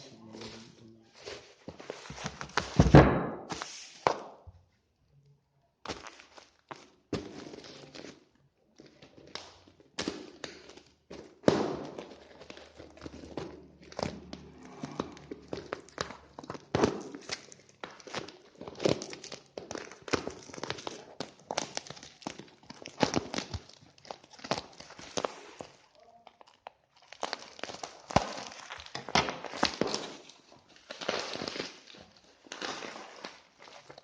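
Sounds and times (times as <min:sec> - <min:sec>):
plastic packaging rustling: 0:00.0 - 0:04.2, 0:05.8 - 0:34.0.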